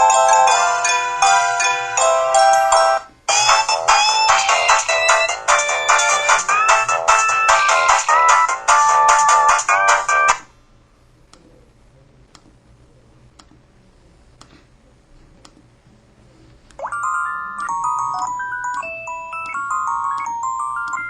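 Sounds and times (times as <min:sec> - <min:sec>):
phone ringtone melody: 0:00.0 - 0:10.4, 0:16.8 - 0:21.0.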